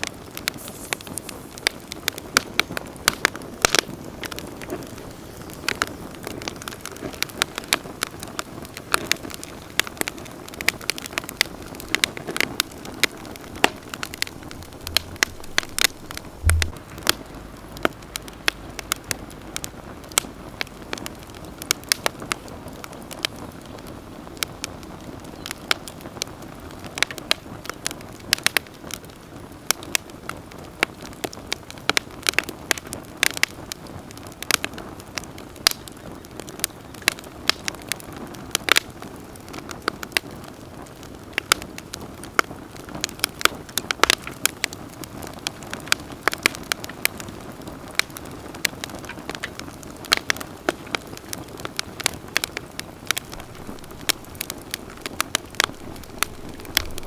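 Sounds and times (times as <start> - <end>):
campfire crackling and popping: 0.0 - 57.0
low thud: 13.2 - 19.1.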